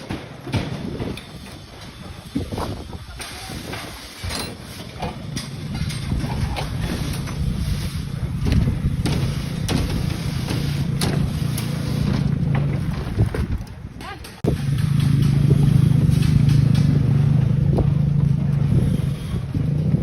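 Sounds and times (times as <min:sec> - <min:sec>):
sharp clicks and knocks: 0:08.3 - 0:18.3
engine running: 0:14.4 - 0:20.0.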